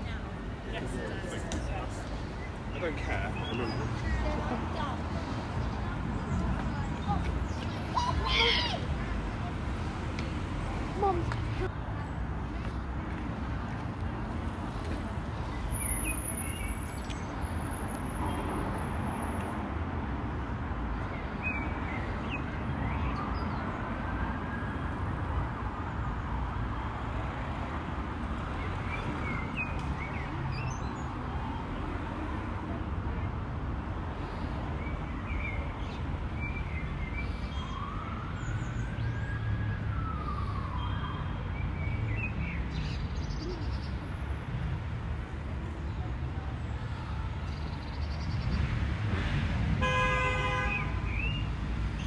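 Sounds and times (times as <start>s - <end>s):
city street traffic: 0.0s - 52.0s
emergency vehicle siren wailing: 37.2s - 42.1s.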